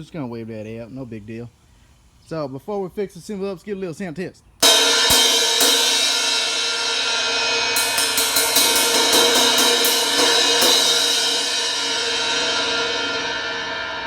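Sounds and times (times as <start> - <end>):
crash cymbal struck: 4.6 - 14.0.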